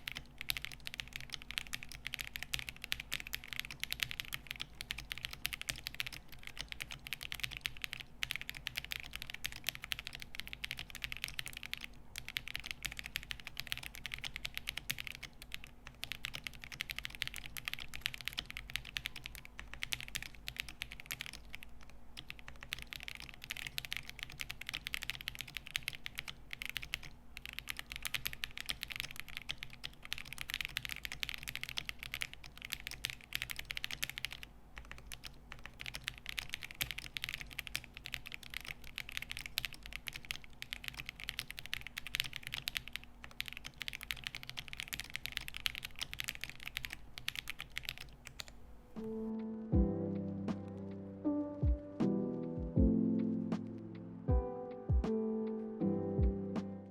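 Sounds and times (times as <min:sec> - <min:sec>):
fast typing on mechanical keyboard: 0:00.0 - 0:48.6.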